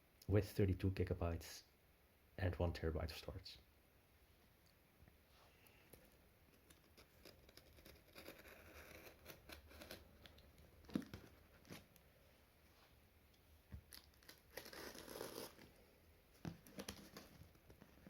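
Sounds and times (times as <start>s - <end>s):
packaging rustling and tearing: 13.8s - 15.7s.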